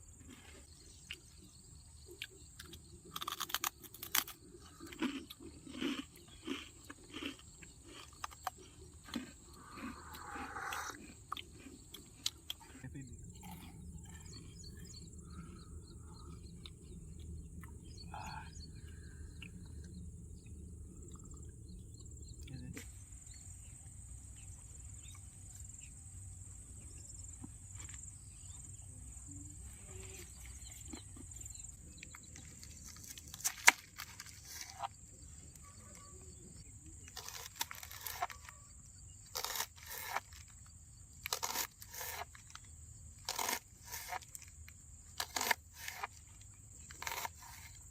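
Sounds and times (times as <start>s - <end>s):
insect drone: 0.0s - 47.9s
low rumble: 13.0s - 23.6s
crunching and scraping handling noises: 29.9s - 36.2s, 37.0s - 47.9s.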